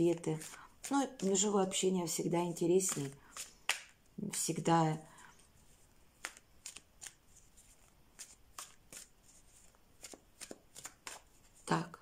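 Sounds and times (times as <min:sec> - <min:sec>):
cards being shuffled: 0:00.0 - 0:01.5, 0:02.5 - 0:04.0, 0:05.6 - 0:11.7.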